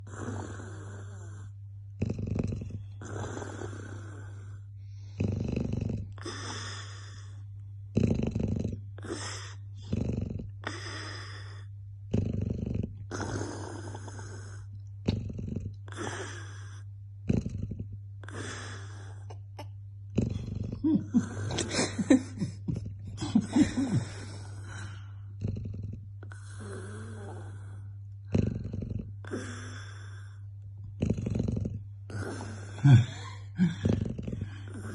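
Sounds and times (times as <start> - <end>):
dog snoring: 0.0 - 19.3, 20.1 - 34.9
dog snorting: 5.1 - 7.0, 8.0 - 11.4, 20.1 - 21.7, 30.9 - 34.9.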